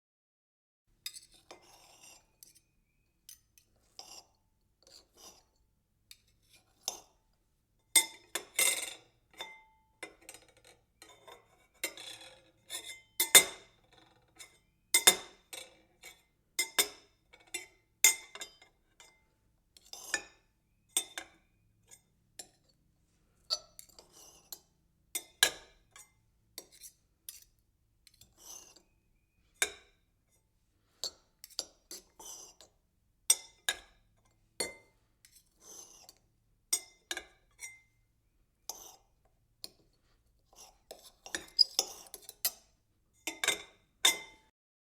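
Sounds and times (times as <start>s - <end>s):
kitchen knife clinking and cutting: 23.5s - 27.5s, 34.6s - 37.9s, 40.6s - 42.7s.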